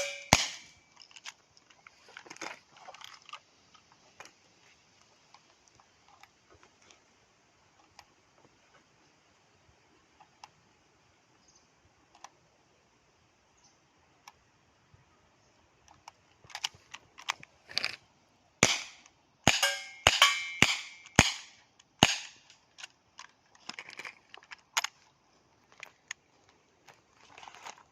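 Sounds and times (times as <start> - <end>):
airsoft revolver shots: 0.0 - 0.7, 18.6 - 22.5.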